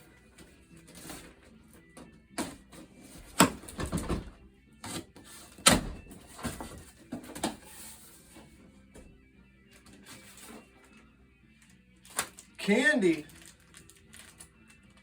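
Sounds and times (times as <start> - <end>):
papery rustling of packing: 12.0 - 15.0.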